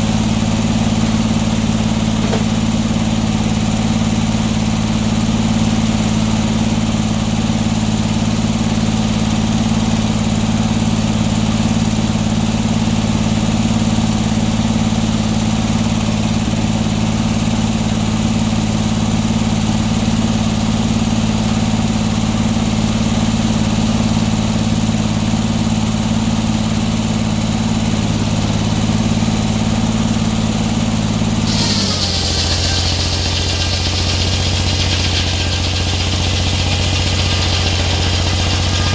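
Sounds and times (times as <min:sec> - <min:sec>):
sawmill engine running: 0:00.0 - 0:16.4, 0:17.1 - 0:38.9
loud hiss: 0:31.5 - 0:38.9.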